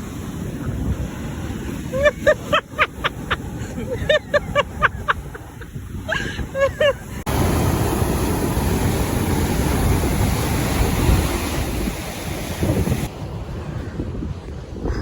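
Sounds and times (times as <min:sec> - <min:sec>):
ocean surf washing on beach: 0:00.0 - 0:15.0
wind buffeting microphone: 0:03.1 - 0:15.0.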